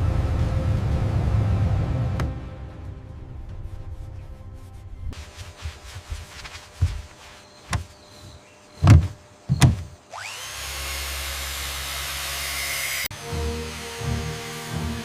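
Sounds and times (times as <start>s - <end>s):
heavy thumps: 5.7s - 10.0s.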